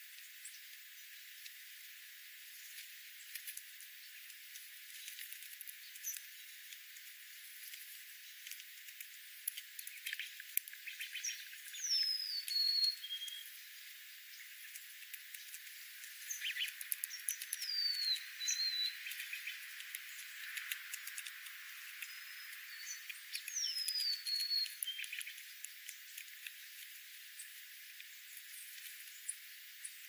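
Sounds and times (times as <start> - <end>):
high bird chirps: 9.9 - 13.6, 16.2 - 20.5, 21.9 - 25.4
sharp ticks: 14.6 - 27.0.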